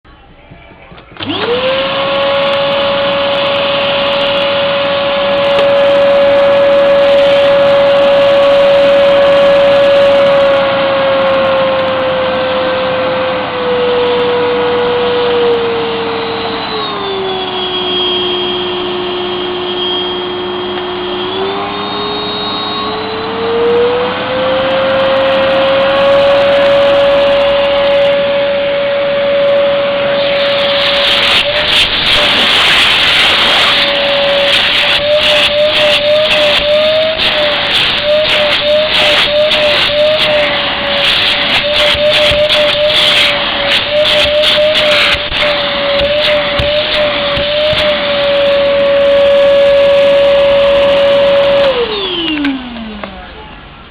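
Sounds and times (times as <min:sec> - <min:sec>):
vacuum cleaner motor whine: 0:00.1 - 0:53.9.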